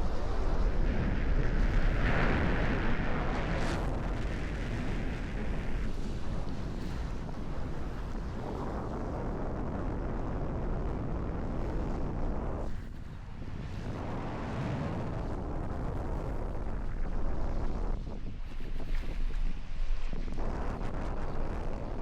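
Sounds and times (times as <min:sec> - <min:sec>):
wind buffeting microphone: 0:00.0 - 0:22.0.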